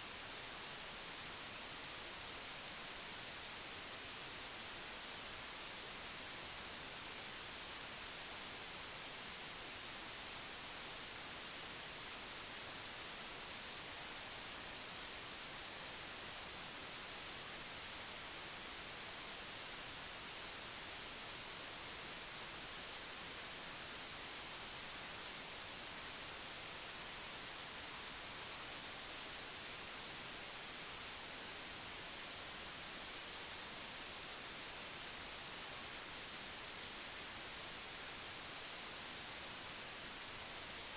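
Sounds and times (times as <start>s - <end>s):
steady static hiss: 0.0s - 40.9s.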